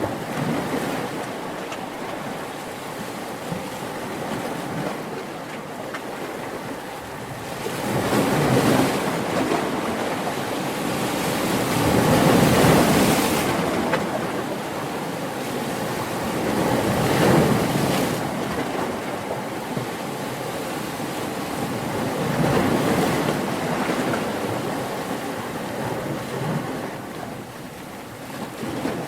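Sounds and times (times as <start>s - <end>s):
ocean waves washing in: 6.2s - 29.0s.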